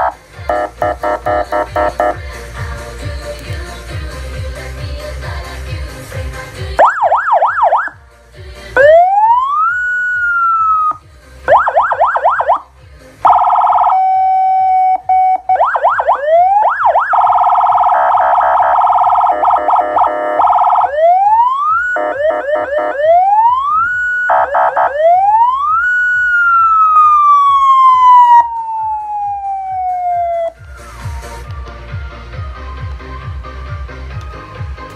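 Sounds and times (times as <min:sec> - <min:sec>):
electronic siren yelping and wailing: 0:00.0 - 0:02.2, 0:06.8 - 0:08.0, 0:08.8 - 0:12.6, 0:13.2 - 0:33.4.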